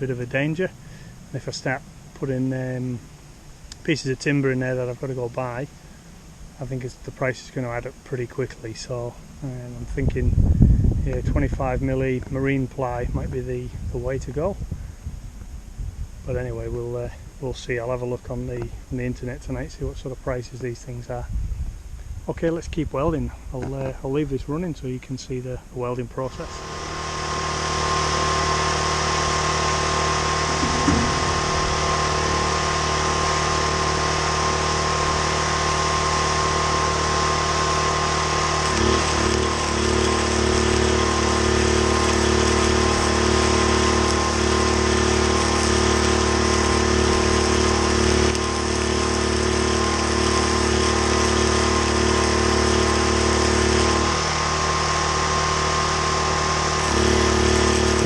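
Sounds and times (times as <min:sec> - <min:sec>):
generator running under load: 0:00.0 - 0:14.6, 0:25.4 - 0:58.0
welding arc hissing: 0:26.3 - 0:58.0.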